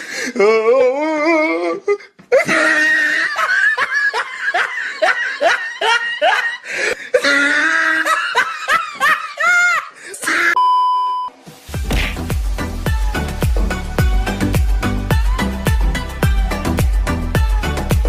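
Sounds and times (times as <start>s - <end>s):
hearty laughter: 2.3s - 10.5s
upbeat dance music: 11.8s - 18.0s.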